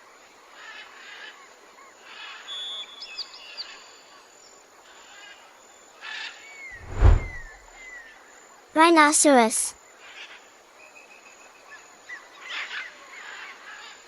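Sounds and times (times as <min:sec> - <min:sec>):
low thump: 0:06.8 - 0:07.5.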